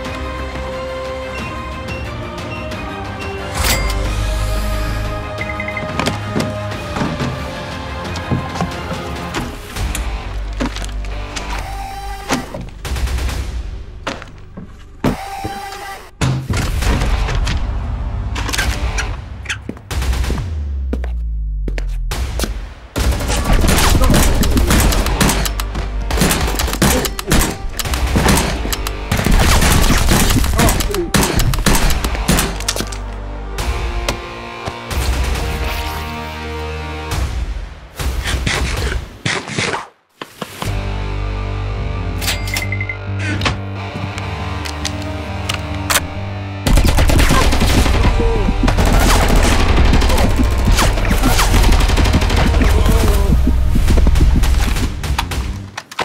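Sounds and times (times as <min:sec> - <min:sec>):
background music: 0:00.0 - 0:39.3, 0:40.4 - 0:56.0
background music with bass: 0:40.7 - 0:42.2, 0:42.8 - 0:55.7
rapid automatic gunfire: 0:46.7 - 0:54.9.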